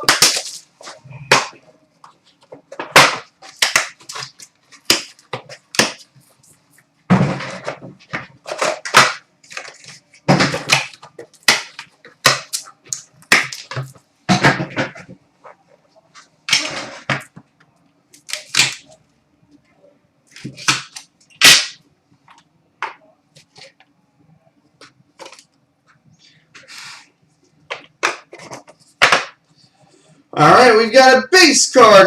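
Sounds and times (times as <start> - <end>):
packaging crinkling and ripping: 18.2 - 19.0.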